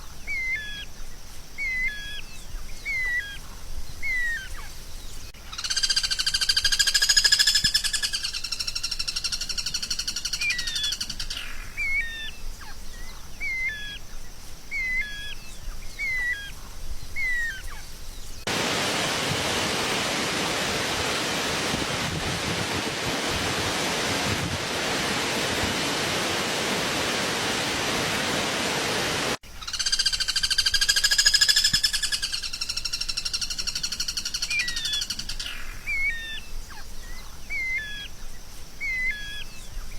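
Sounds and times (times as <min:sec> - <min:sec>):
songbird trill and chirps: 0:00.0 - 0:18.5, 0:29.5 - 0:39.9
steady hiss: 0:00.0 - 0:29.7.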